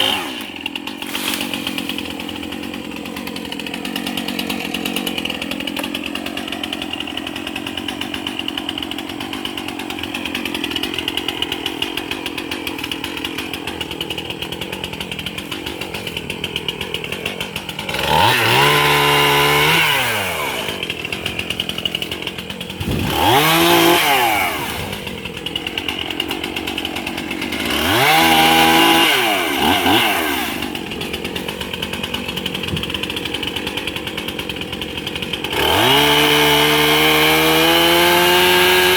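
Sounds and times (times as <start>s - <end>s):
chainsaw idling and revving: 0.0s - 38.9s.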